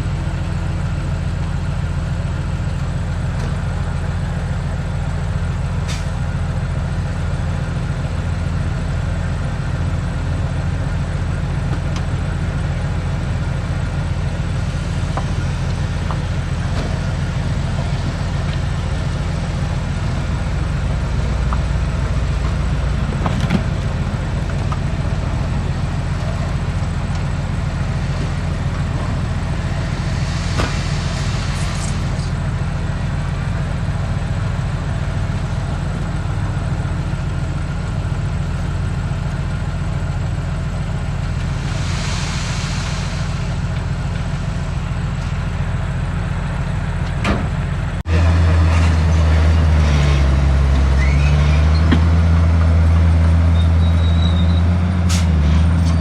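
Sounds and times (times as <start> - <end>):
heavy diesel engine droning: 0.0 - 56.0
brief hissing: 28.6 - 32.9, 41.4 - 44.9.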